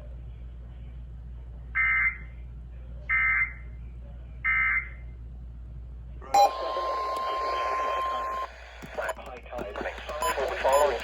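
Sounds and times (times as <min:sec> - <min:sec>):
two-tone digital data bursts: 0:06.4 - 0:09.1.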